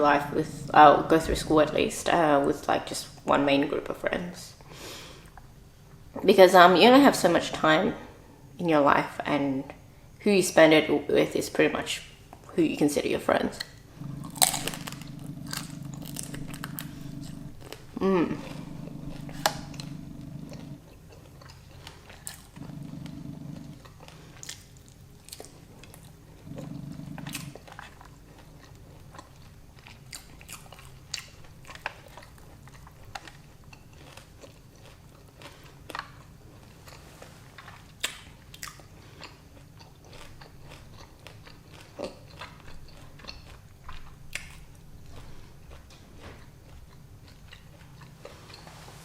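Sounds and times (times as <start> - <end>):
person chewing and biting: 14.0 - 48.7.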